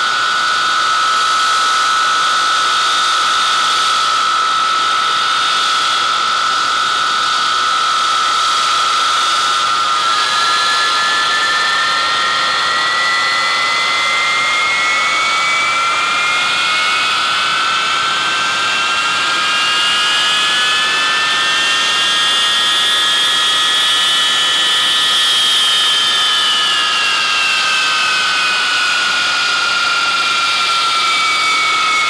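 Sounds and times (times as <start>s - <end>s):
jet engines running loud: 0.0s - 32.0s
high turbine whines rising: 8.7s - 32.0s.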